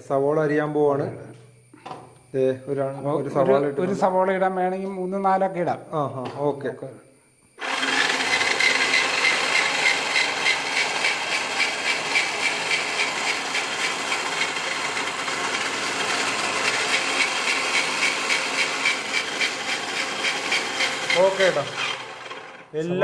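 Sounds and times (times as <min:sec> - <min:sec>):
vegetable slicing machine running: 0:07.6 - 0:22.7.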